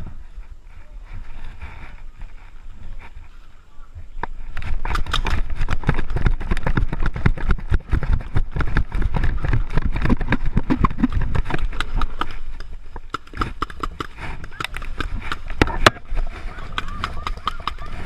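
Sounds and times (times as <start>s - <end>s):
gear rattling against camera: 4.2s - 18.0s
running footsteps: 4.3s - 18.0s.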